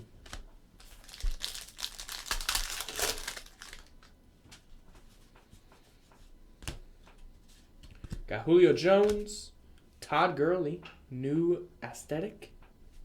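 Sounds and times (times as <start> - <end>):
wrapper tearing and crinkling: 0.3 - 4.1
cards clicking: 9.0 - 9.3.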